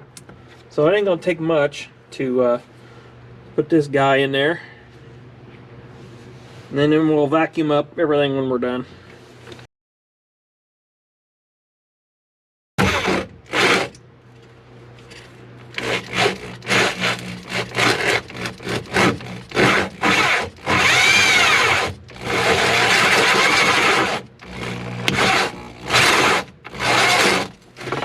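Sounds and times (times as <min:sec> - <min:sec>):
power drill cutting through panel: 0:12.8 - 0:14.0, 0:15.7 - 0:28.0.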